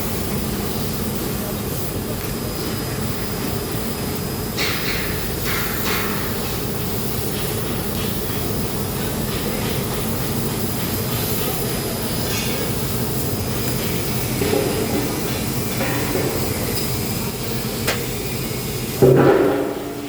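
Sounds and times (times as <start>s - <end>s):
hiss: 0.0s - 20.0s
mechanical rumble: 12.8s - 20.0s.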